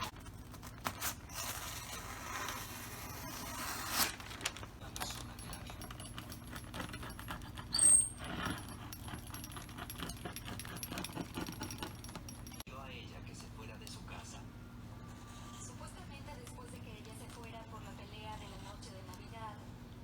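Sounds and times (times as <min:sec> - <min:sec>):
high squeak: 0:07.7 - 0:08.5.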